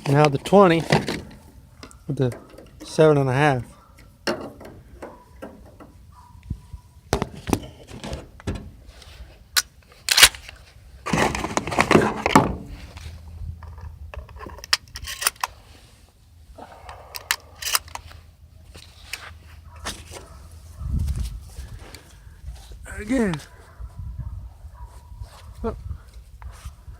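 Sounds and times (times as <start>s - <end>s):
shotgun metallic clicks and clinks: 9.6s - 10.6s, 13.6s - 15.6s, 17.0s - 18.2s.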